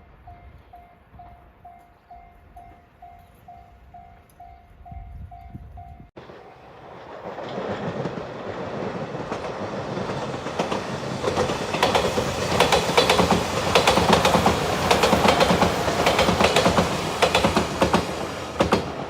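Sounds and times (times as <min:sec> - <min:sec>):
electric train passing: 0:00.0 - 0:19.0
wheels clacking over rail joints: 0:06.2 - 0:19.0.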